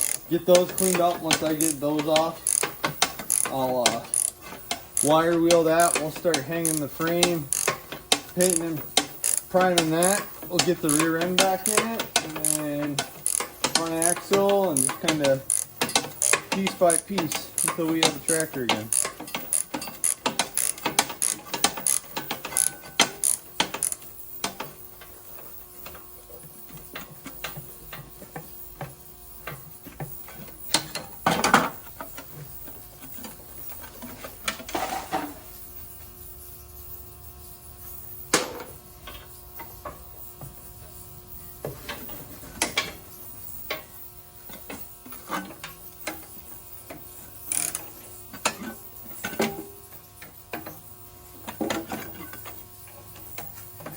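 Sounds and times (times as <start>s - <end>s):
ratchet wrench clicking: 0.0s - 26.0s, 44.5s - 50.8s.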